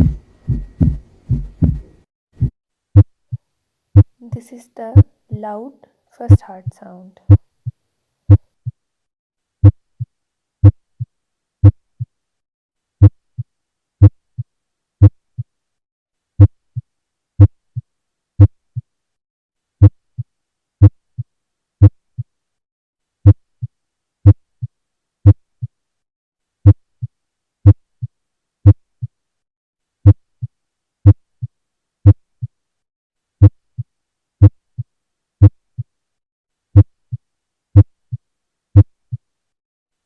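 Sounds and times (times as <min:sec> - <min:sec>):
heartbeat through stethoscope: 0:00.0 - 0:03.1, 0:07.3 - 0:08.8, 0:15.0 - 0:15.5.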